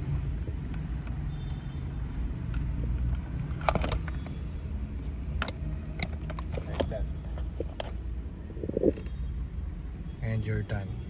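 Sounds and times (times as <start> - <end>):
low background rumble: 7.5 - 9.0.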